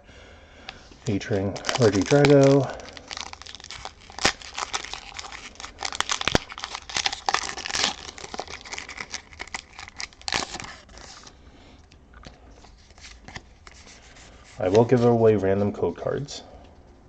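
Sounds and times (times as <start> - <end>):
foil wrapper crinkling: 1.0 - 11.4.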